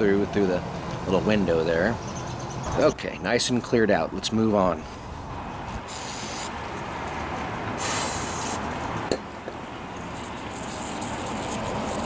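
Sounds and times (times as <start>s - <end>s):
aerosol spray hissing: 5.9s - 6.5s, 7.8s - 8.6s.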